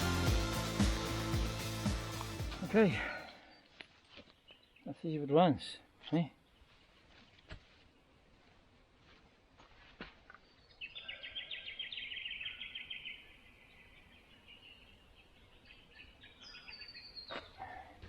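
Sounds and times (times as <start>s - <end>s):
bird singing rapid trill: 10.6s - 17.6s.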